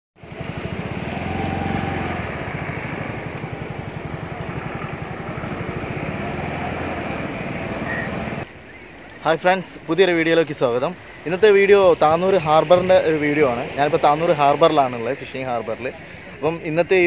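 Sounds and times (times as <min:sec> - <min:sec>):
engine chugging steadily: 0:00.2 - 0:08.4.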